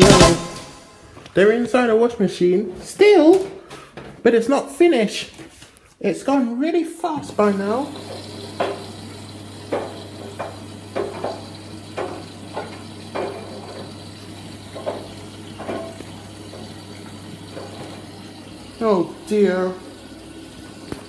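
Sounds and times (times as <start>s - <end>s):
washing machine drum knocking: 0.0s - 0.8s, 7.3s - 18.8s
washing machine humming: 0.0s - 4.6s, 7.0s - 21.0s
water sloshing: 7.4s - 18.8s.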